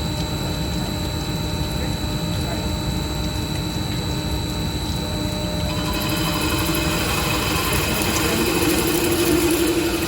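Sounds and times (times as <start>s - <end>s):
mid-pitched machine tone: 0.0s - 10.0s
drilling machine humming: 4.7s - 10.0s.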